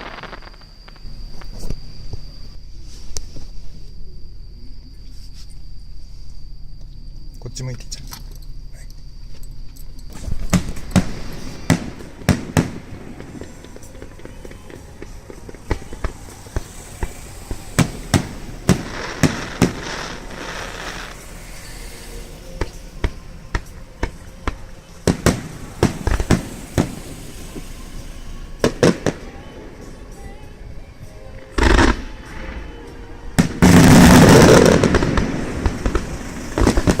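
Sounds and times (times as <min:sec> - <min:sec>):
fireworks bangs: 0:00.0 - 0:01.8, 0:10.1 - 0:30.4, 0:31.3 - 0:37.0
fireworks crackling and hissing: 0:00.0 - 0:06.6, 0:10.0 - 0:37.0.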